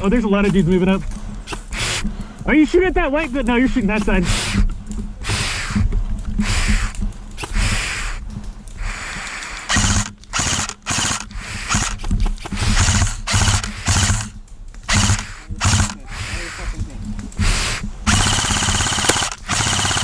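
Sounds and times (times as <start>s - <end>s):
airsoft rifle full-auto bursts: 8.9s - 16.3s, 17.6s - 20.0s.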